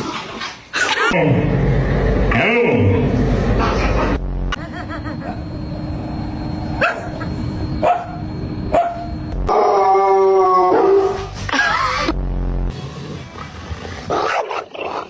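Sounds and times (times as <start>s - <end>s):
dog barking: 6.8s - 7.2s, 7.8s - 9.1s, 14.1s - 15.0s
dog howling and yowling: 9.5s - 11.2s.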